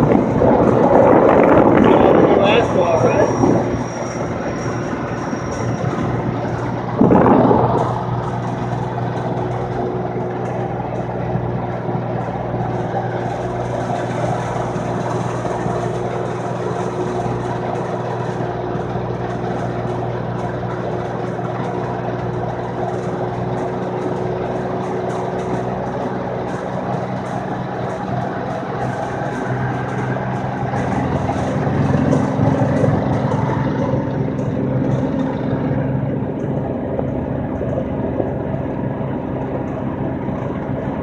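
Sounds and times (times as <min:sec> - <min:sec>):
sudden loud burst of noise: 0:00.0 - 0:09.8
road noise: 0:00.0 - 0:41.0
vehicle engine hum: 0:00.0 - 0:41.0.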